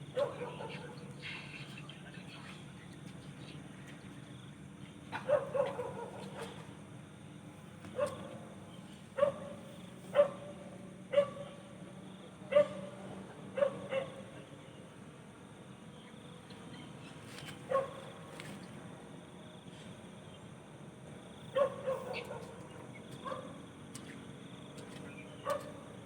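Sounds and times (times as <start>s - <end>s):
low background hum: 0.0s - 26.0s
dog barking: 0.1s - 1.0s, 5.1s - 6.7s, 8.0s - 8.4s, 9.2s - 11.6s, 12.5s - 14.3s, 17.7s - 18.0s, 21.5s - 23.6s, 25.4s - 25.8s.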